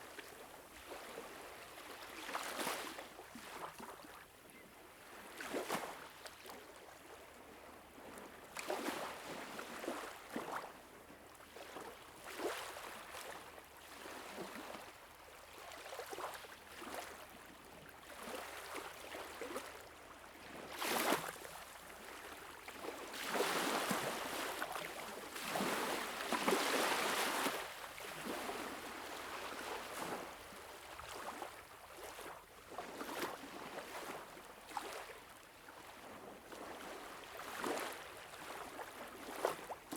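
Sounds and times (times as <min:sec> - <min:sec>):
water lapping: 0:20.8 - 0:39.9.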